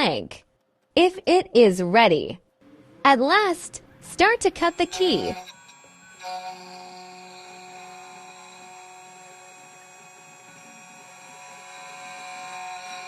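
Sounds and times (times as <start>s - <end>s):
key cutting machine humming: 4.7s - 13.0s.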